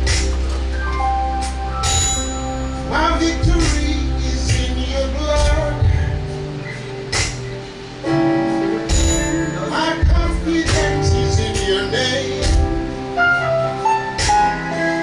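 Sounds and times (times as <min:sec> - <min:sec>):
held chords: 0:00.0 - 0:15.0
person singing: 0:02.8 - 0:07.1, 0:08.6 - 0:13.7
drum strokes: 0:07.1 - 0:13.1.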